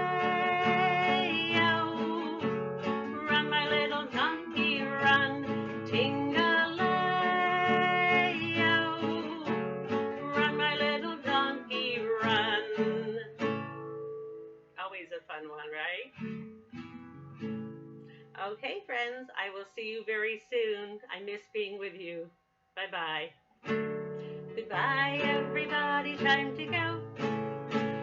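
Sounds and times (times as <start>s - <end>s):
woman singing: 0.0s - 13.4s, 24.5s - 27.2s
acoustic guitar strumming: 0.0s - 15.1s, 16.0s - 18.4s, 23.6s - 28.0s.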